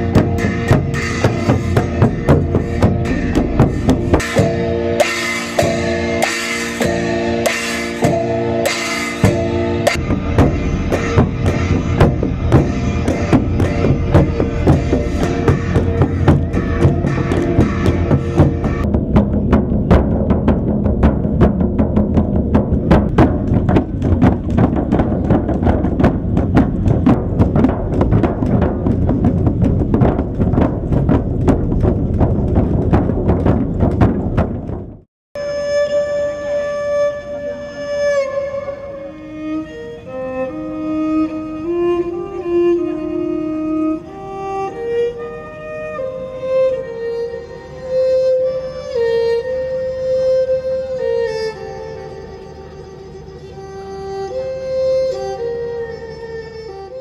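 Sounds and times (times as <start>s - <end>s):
rapid drumming: 0.0s - 35.1s
held pitched notes: 0.0s - 57.0s.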